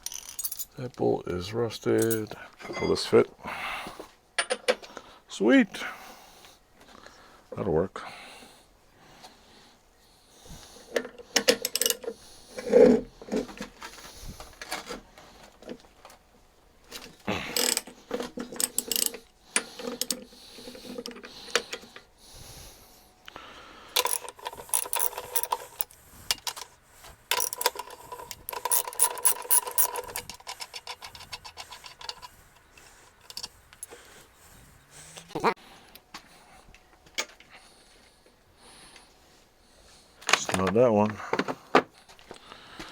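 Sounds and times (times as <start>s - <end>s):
hand tools clinking on metal: 0.0s - 1.0s, 1.8s - 3.2s, 17.5s - 21.8s, 24.0s - 26.7s, 27.3s - 34.1s
socket ratchet clicking rapidly: 18.6s - 19.2s, 24.0s - 25.9s, 27.3s - 32.3s.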